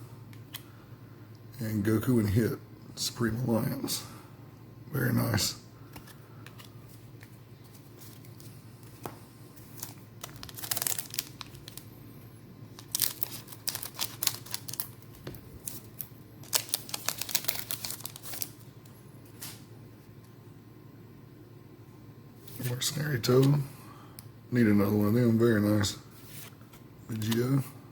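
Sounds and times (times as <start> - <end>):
card packs crinkling and tearing: 5.8 - 11.9, 12.7 - 18.6, 26.3 - 27.6.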